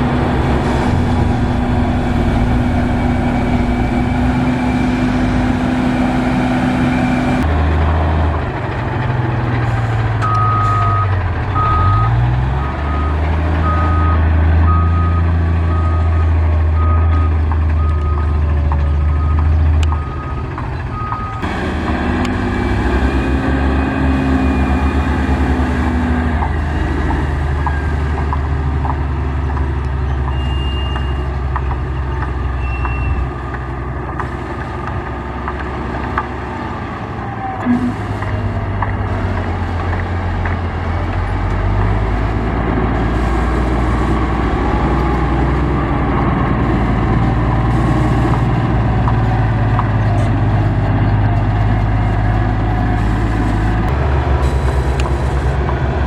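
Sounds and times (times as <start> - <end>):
diesel construction machinery: 0.0 - 56.0
reversing alarm beeping: 0.2 - 7.4, 10.2 - 18.4, 19.0 - 21.5, 22.4 - 25.7, 46.6 - 48.7, 52.9 - 55.7.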